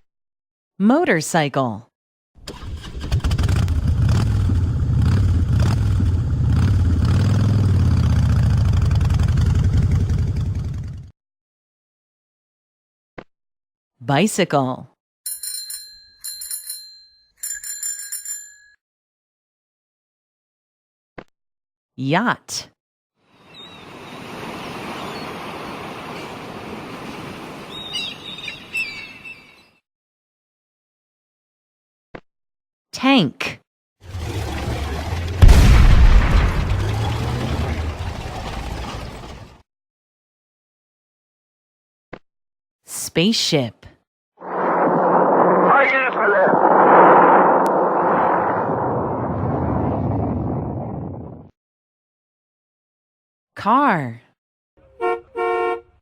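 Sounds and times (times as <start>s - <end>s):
motorcycle engine running: 3.5s - 11.1s
water rushing along hull: 23.7s - 27.9s.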